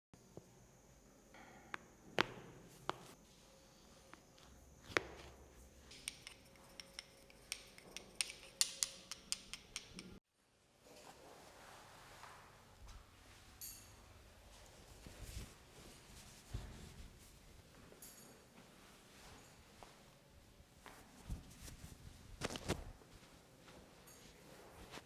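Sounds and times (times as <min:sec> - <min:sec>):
sharp clicks and taps: 0:05.9 - 0:10.2.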